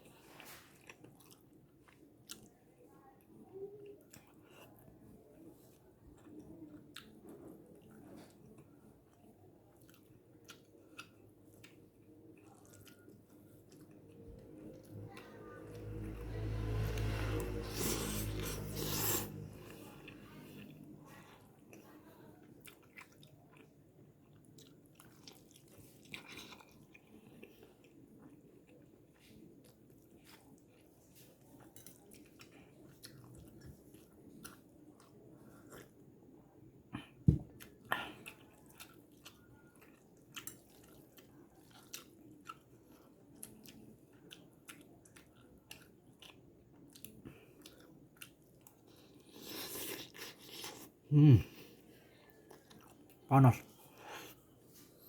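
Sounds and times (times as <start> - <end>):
person chewing noodles: 0.0 - 2.8, 4.0 - 36.2, 36.8 - 55.0.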